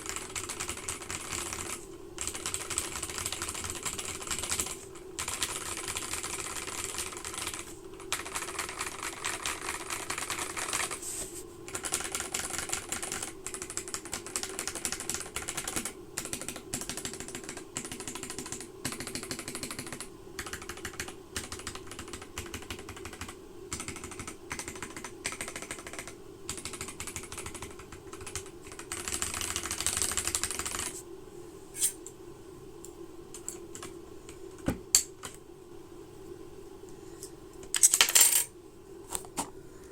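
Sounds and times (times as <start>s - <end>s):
mechanical keyboard typing: 0.0s - 11.0s, 11.7s - 31.0s.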